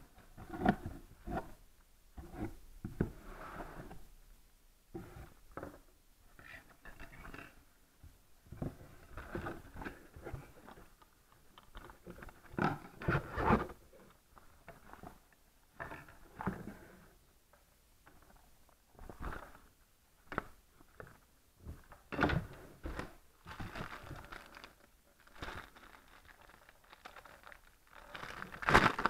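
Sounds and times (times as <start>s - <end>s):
packaging rustling and scraping: 22.7s - 29.0s.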